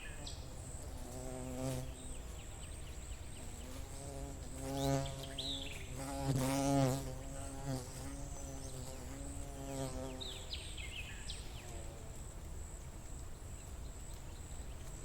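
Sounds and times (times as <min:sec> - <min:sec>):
bee buzzing: 0:00.0 - 0:10.4.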